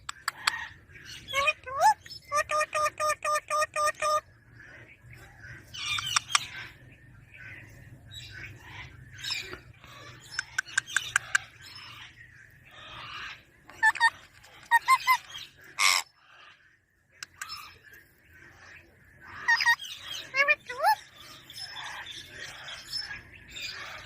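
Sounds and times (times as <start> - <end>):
sharp clicks: 0.0 - 0.6, 10.3 - 11.5, 17.2 - 17.6
parrot calling and chattering: 0.0 - 4.3, 5.6 - 6.8, 8.5 - 12.1, 12.8 - 16.6, 17.2 - 17.8, 19.3 - 24.0.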